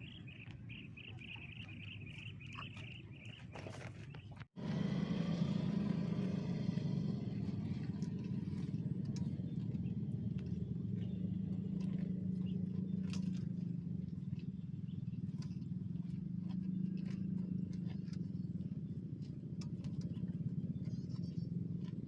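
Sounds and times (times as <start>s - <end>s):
motor droning: 4.5s - 22.0s.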